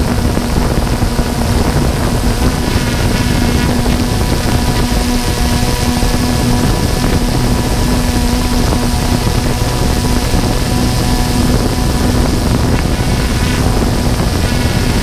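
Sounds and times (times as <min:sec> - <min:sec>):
drone motors whining: 0:00.0 - 0:15.0
low rumble of prop wash: 0:00.0 - 0:15.0
wind on microphone: 0:00.0 - 0:15.0.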